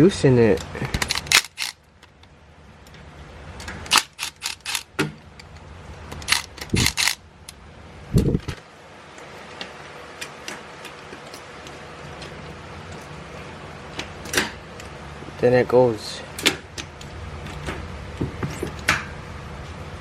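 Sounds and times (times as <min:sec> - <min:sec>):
metal clicks and clacks: 0:03.6 - 0:07.2.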